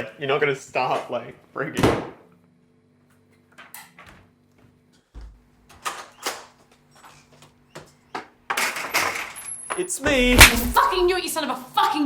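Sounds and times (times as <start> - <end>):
low thud: 10.1 - 11.1.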